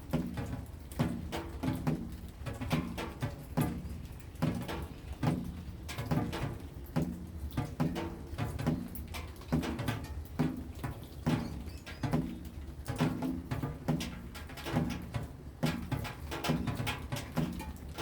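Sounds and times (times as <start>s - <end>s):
light patter of small drops: 0.0s - 18.0s
rain drops on ringing surface: 0.0s - 18.0s.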